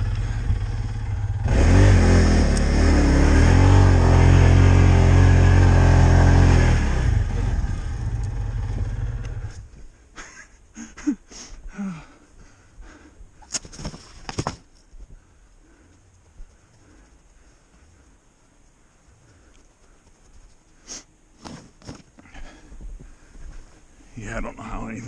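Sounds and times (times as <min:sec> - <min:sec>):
vehicle engine running: 0:00.0 - 0:09.7.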